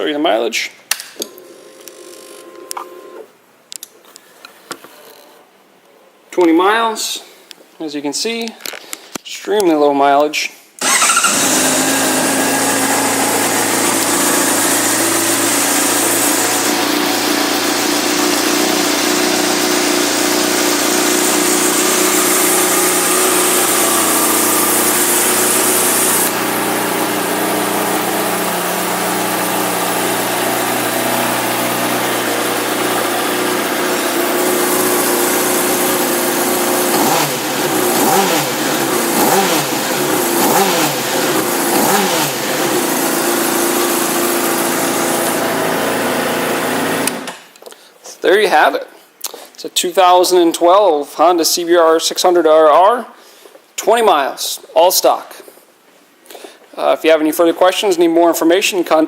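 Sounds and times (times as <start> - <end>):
motorcycle engine idling and revving: 10.8 - 47.3.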